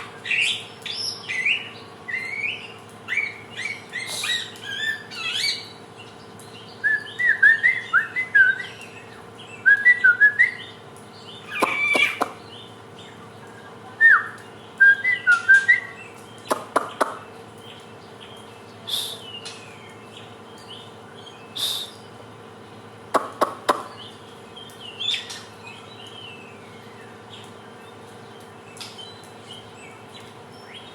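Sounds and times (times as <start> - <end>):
bird chirping and whistling: 0.3 - 5.7, 6.8 - 9.0, 11.5 - 12.4, 14.0 - 17.1.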